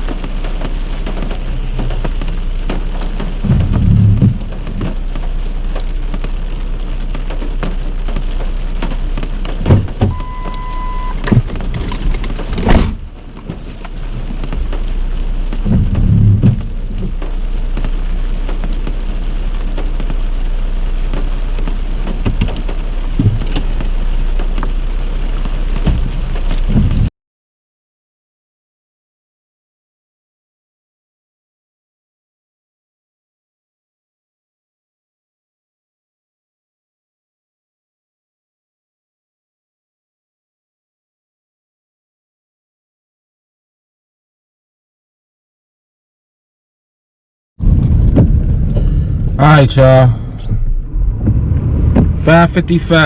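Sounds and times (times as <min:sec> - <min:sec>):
heavy rain pouring: 0:00.0 - 0:27.1, 0:47.6 - 0:53.0
low rumbles: 0:00.0 - 0:27.1, 0:47.6 - 0:53.0
short beep: 0:10.1 - 0:11.3.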